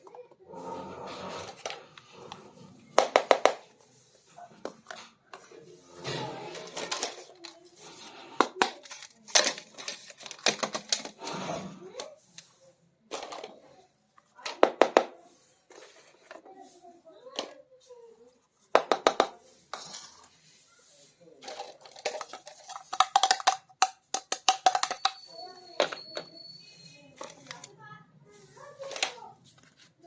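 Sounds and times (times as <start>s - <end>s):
plastic toy pieces clattering: 6.5s - 11.3s, 13.1s - 13.8s, 21.4s - 26.2s, 27.2s - 27.8s, 28.8s - 29.2s.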